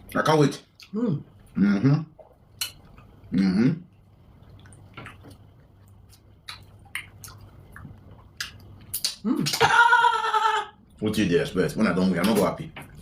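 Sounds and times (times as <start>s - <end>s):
wet chewing and smacking: 3.9s - 9.7s.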